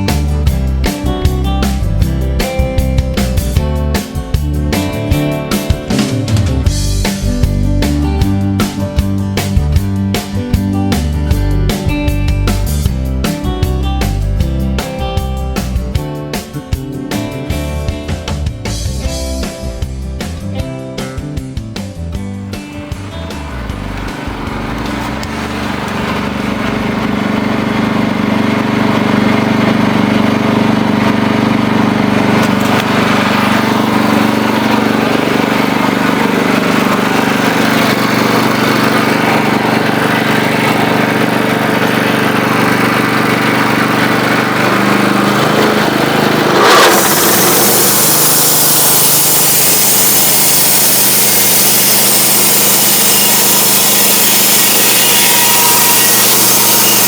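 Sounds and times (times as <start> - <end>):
sawmill engine running: 0.0 - 15.8, 22.4 - 57.0
saw blade cutting wood: 43.6 - 57.0.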